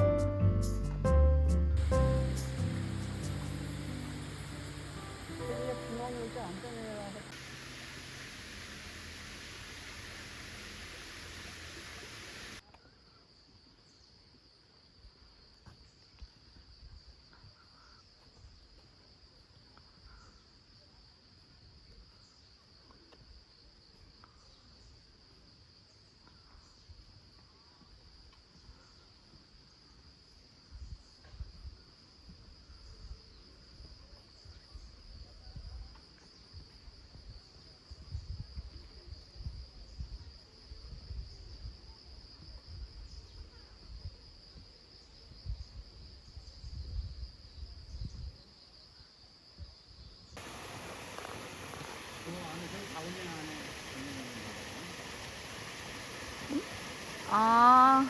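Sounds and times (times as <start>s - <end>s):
loud hiss: 1.8s - 12.6s, 50.4s - 58.0s
crickets chirring: 1.8s - 58.0s.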